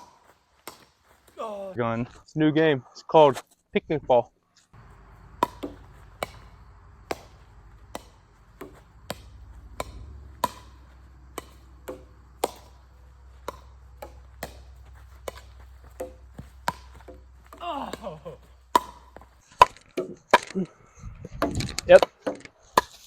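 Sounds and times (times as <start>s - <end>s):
axe chopping wood: 0.0s - 1.0s, 5.2s - 20.6s.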